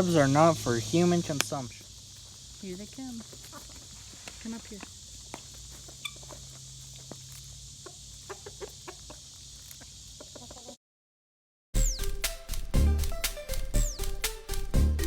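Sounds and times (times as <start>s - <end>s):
chickens clucking: 0.0s - 10.8s
high insect buzz: 0.0s - 10.8s, 11.8s - 15.0s.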